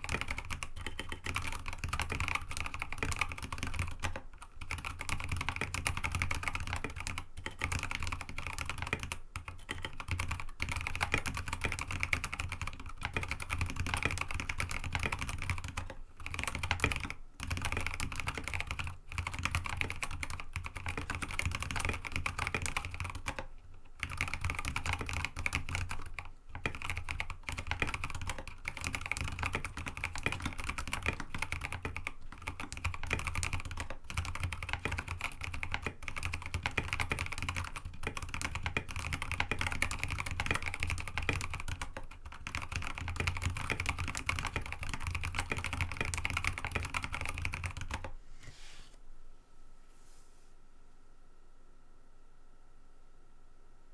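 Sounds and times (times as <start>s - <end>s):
mechanical keyboard typing: 0.0s - 48.1s.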